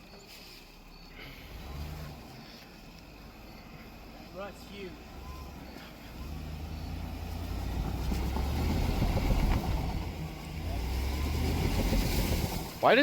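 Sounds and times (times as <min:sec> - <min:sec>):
truck engine rumbling under load: 0:00.0 - 0:13.0.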